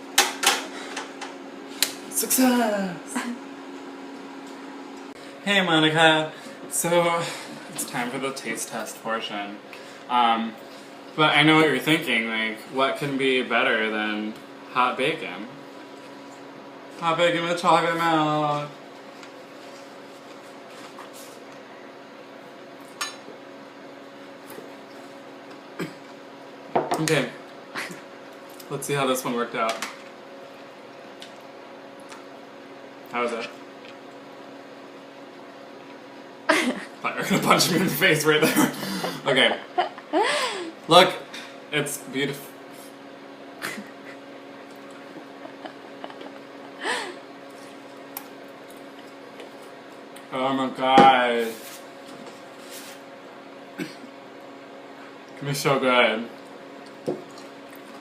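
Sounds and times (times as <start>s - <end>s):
low room hum: 0.0s - 58.0s.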